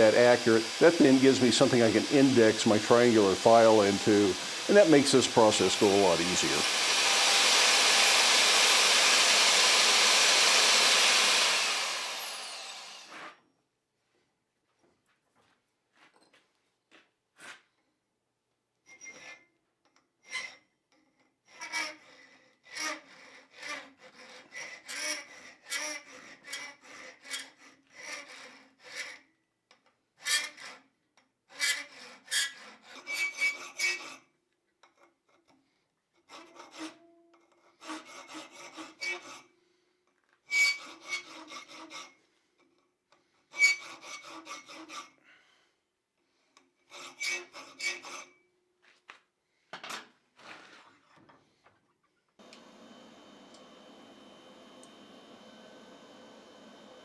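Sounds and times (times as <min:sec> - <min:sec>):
file rasping on steel: 0:00.0 - 0:13.3, 0:21.5 - 0:29.2, 0:31.5 - 0:34.3, 0:36.3 - 0:37.0, 0:37.6 - 0:39.5, 0:40.5 - 0:42.2, 0:43.5 - 0:45.2, 0:46.8 - 0:48.4.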